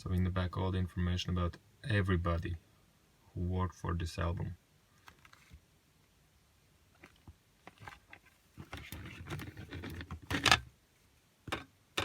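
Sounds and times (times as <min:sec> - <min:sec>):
paper booklet rustling: 0:05.0 - 0:05.6.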